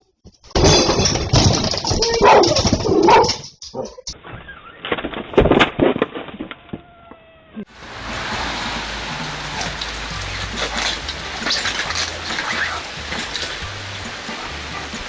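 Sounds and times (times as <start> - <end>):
noise: 0.0 - 15.0
dog howling: 6.5 - 7.7.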